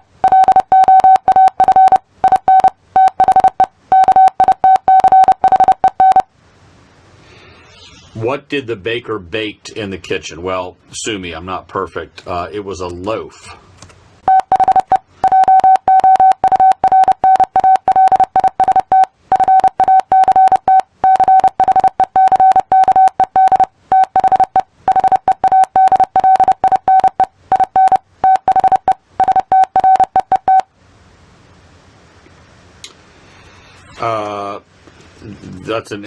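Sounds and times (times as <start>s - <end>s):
morse code beeps: 0.2s - 6.3s, 14.3s - 30.7s.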